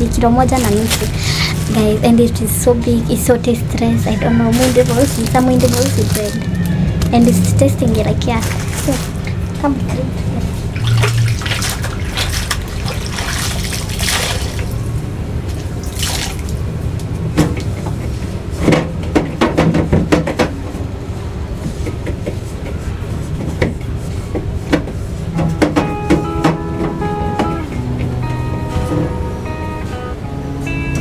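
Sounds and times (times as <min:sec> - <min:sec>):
guitar music: 0:00.0 - 0:10.8, 0:25.3 - 0:31.0
water splashing: 0:00.0 - 0:17.8.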